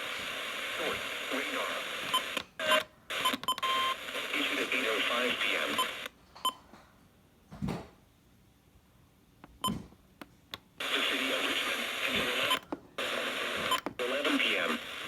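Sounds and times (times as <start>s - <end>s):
steady radio hiss: 0.0s - 6.1s, 10.8s - 15.0s.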